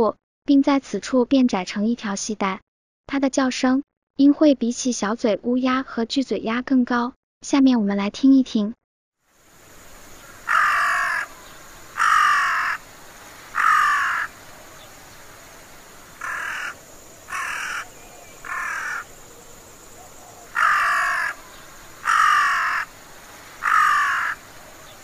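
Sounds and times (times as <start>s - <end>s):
crow cawing: 10.1s - 25.0s.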